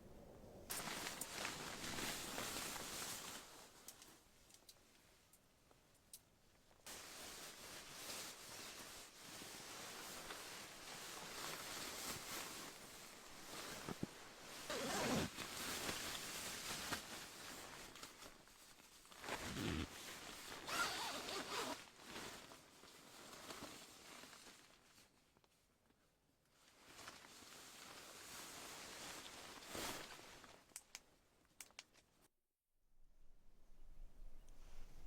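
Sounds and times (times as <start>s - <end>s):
zipper rasping: 14.6s - 15.3s, 19.3s - 20.0s, 20.6s - 21.8s.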